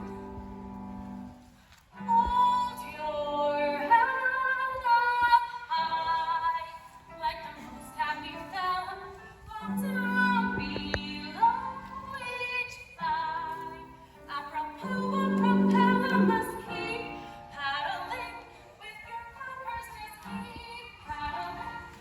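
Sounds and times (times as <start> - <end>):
woman singing: 2.0 - 22.0
musical accompaniment: 6.3 - 22.0.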